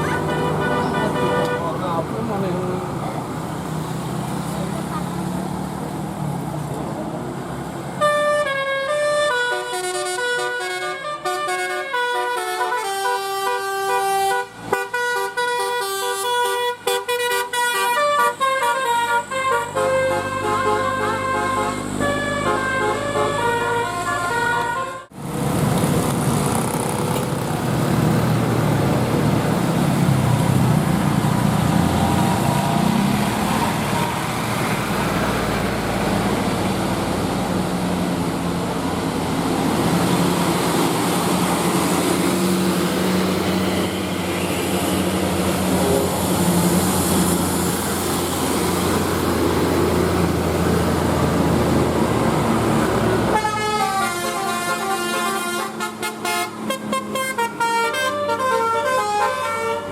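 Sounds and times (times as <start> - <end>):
multi-tone bus horn melody: 0.0 - 1.9, 8.0 - 25.2, 43.5 - 46.4, 53.0 - 59.9
bus engine rumble: 0.0 - 59.9
road noise: 0.0 - 59.9.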